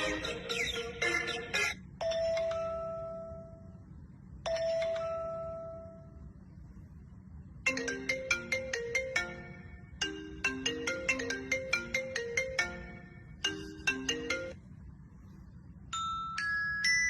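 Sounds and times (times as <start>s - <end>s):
marimba phone ringtone: 0.0s - 3.7s, 4.5s - 6.2s, 7.7s - 14.6s
chime tones: 15.9s - 17.0s.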